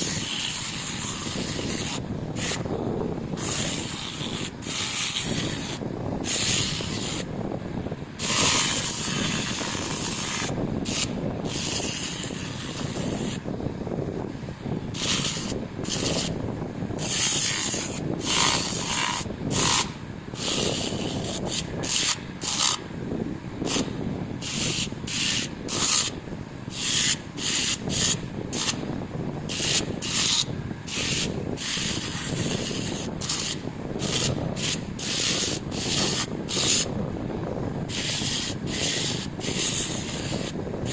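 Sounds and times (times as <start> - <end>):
sandpaper rasping on metal: 0.0 - 2.7, 3.4 - 7.3, 8.2 - 13.4, 15.0 - 16.4, 17.0 - 22.8, 23.7 - 28.8, 29.5 - 36.9, 37.9 - 40.9.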